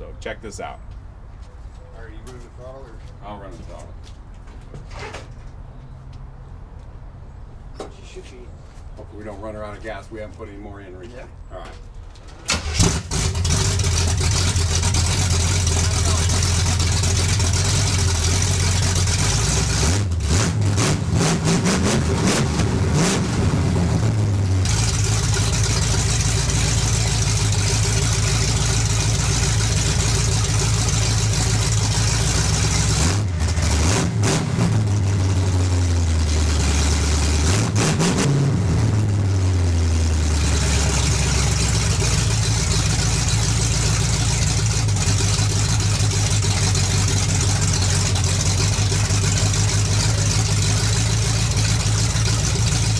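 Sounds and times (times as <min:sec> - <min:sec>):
engine idling and revving: 0:12.5 - 0:52.9.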